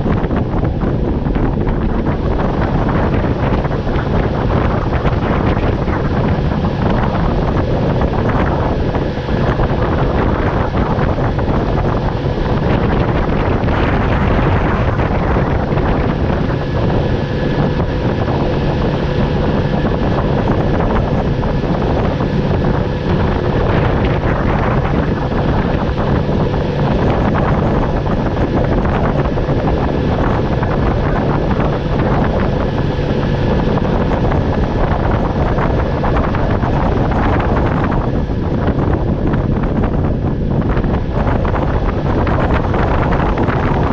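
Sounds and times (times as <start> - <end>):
outboard motor running: 0.0 - 43.9
wind buffeting microphone: 0.0 - 43.9.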